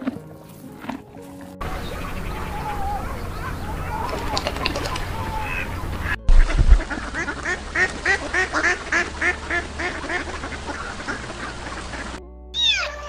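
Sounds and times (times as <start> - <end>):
ducks quacking: 1.6 - 13.0
low thump: 6.2 - 7.0.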